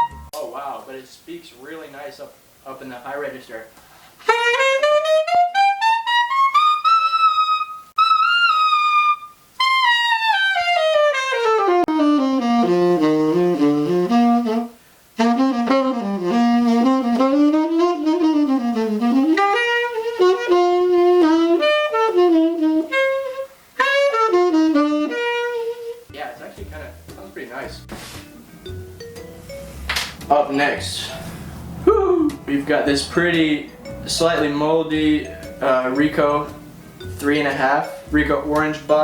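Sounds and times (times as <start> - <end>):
solo jazz tenor saxophone: 4.2 - 26.1
player breathing: 31.0 - 31.8.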